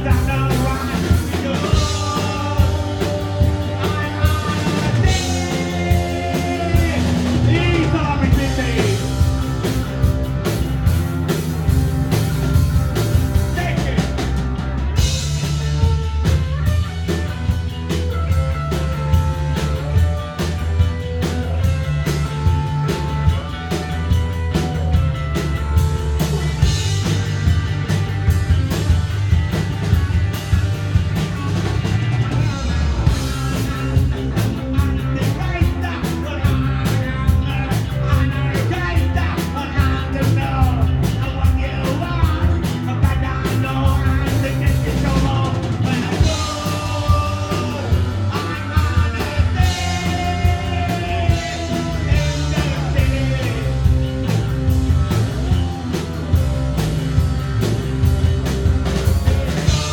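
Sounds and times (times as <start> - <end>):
person singing: 0.0 - 9.2, 35.0 - 54.0
punk rock band playing live: 0.0 - 59.9.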